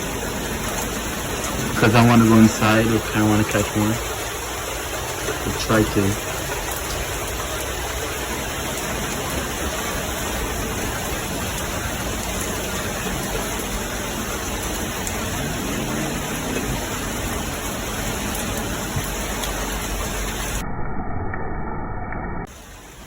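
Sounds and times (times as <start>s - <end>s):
heavy rain pouring: 0.0s - 20.6s, 22.5s - 23.0s.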